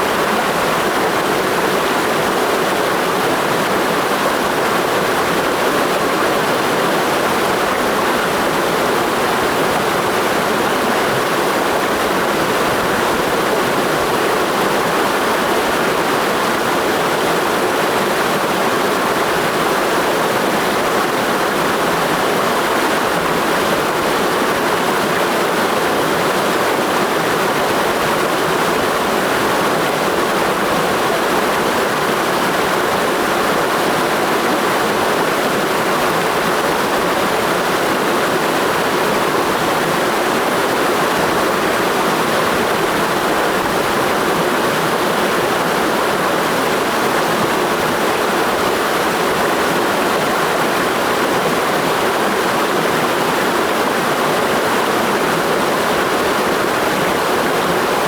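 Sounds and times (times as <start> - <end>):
stream rushing over rocks: 0.0 - 58.0.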